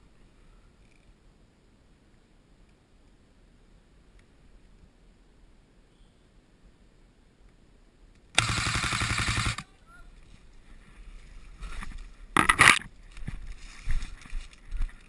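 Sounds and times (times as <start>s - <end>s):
airsoft gun full-auto burst: 8.4s - 9.7s.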